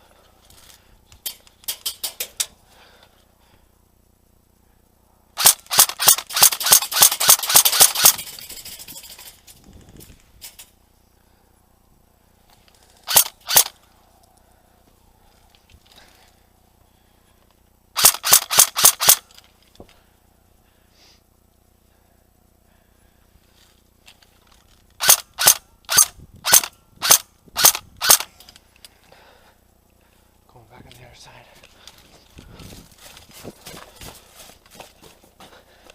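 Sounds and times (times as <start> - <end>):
airsoft gun firing: 5.4 - 8.3, 13.1 - 13.8, 18.0 - 19.3, 25.0 - 28.3.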